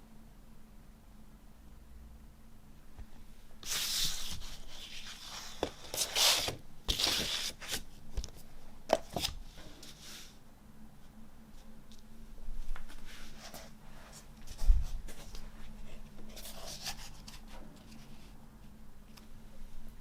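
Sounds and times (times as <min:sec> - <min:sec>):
paper and card packaging rustling: 0:03.7 - 0:07.8.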